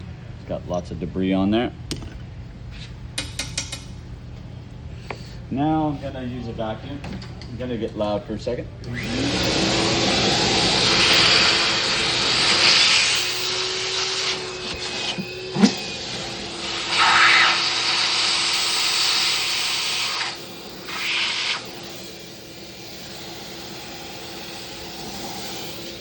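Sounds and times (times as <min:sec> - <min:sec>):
vacuum cleaner suction: 0:08.9 - 0:26.0.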